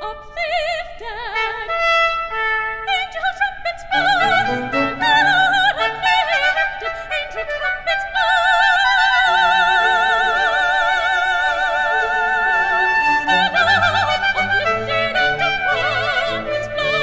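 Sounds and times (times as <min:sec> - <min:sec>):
operatic soprano singing: 0:00.0 - 0:01.8, 0:02.9 - 0:17.0
orchestral accompaniment: 0:03.9 - 0:08.1, 0:11.8 - 0:17.0.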